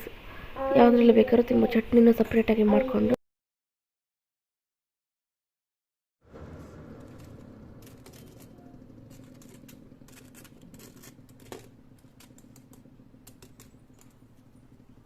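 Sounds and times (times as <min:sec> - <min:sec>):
low steady hum: 0:06.3 - 0:15.0
light clicks and crackles: 0:07.0 - 0:14.6.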